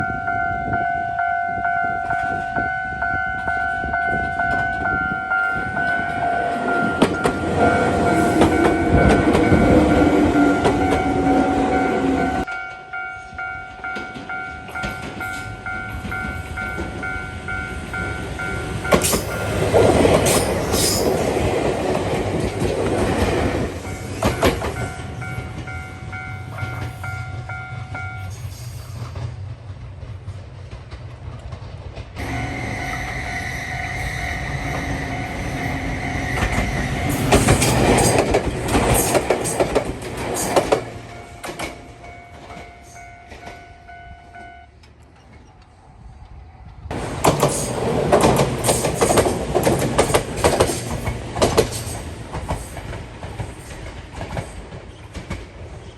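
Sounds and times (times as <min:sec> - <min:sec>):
level crossing alarm ringing: 0:00.0 - 0:19.7, 0:23.8 - 0:28.3, 0:32.2 - 0:44.8
train wheels clacking: 0:05.6 - 0:12.8, 0:13.8 - 0:45.7, 0:46.9 - 0:55.9.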